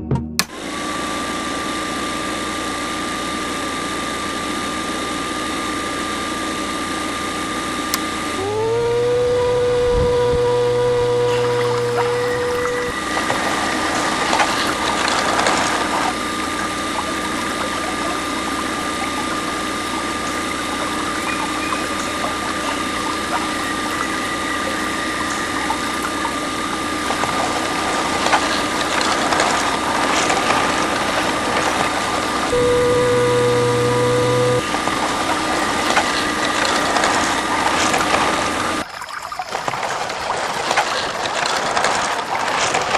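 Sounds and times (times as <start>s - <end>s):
small motor whine: 0.5s - 38.9s
water splashing: 9.5s - 42.9s.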